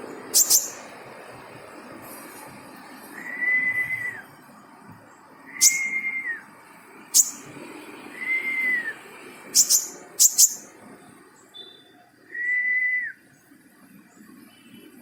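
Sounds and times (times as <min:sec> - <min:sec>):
sharp high bird chirps: 0:00.2 - 0:01.0, 0:05.6 - 0:06.0, 0:07.1 - 0:07.5, 0:09.6 - 0:10.7
bird whistled notes: 0:00.4 - 0:00.9, 0:05.5 - 0:06.4, 0:07.2 - 0:07.5, 0:09.6 - 0:10.7.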